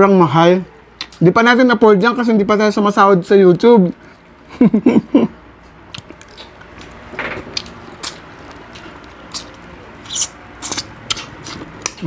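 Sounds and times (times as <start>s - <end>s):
person chewing: 5.9s - 12.0s.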